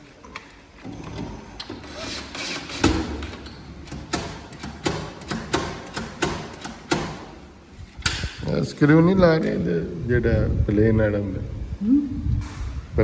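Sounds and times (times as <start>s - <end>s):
tools knocking on metal door: 3.9s - 7.3s.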